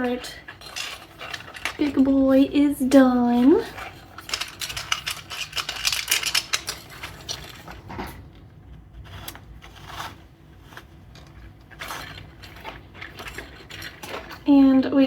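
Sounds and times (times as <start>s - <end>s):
plastic parts clicking and rattling: 3.8s - 8.1s.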